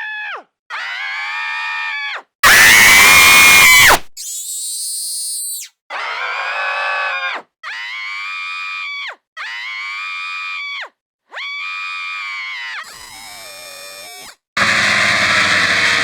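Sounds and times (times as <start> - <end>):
pitched scream with voice effects: 0.0 - 16.0.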